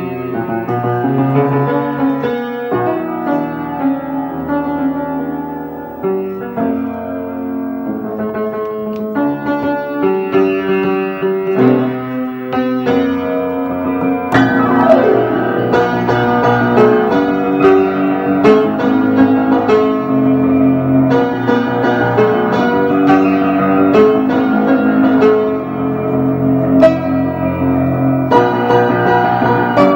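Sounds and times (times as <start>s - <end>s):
piano music: 14.0s - 29.9s.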